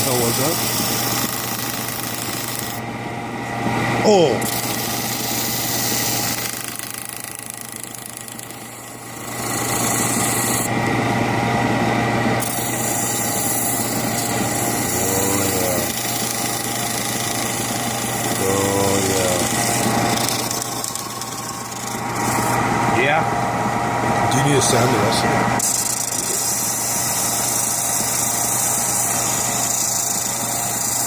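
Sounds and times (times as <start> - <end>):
lathe motor humming: 0.0 - 31.0
sandpaper rasping on wood: 9.3 - 10.7, 25.6 - 31.0.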